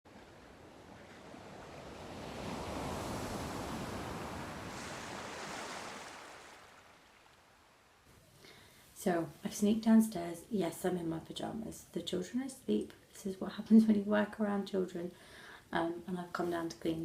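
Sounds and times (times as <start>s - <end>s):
sea wave washing in: 0.1s - 8.0s.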